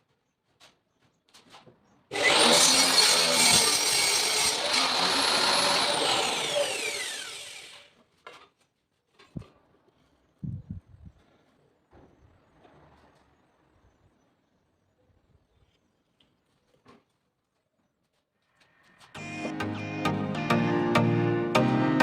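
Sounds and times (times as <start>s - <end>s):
table saw motor whine: 2.1s - 7.9s.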